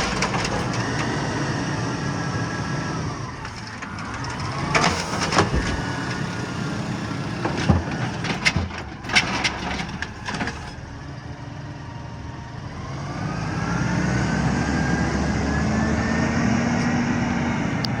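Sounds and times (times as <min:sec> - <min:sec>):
garbage truck clanks and knocks: 0:00.0 - 0:11.4
diesel engine idling and revving: 0:00.0 - 0:18.0.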